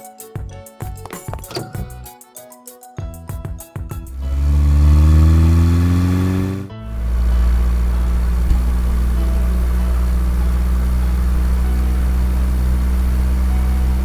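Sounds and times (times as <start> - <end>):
bulldozer engine idling: 4.1 - 14.0.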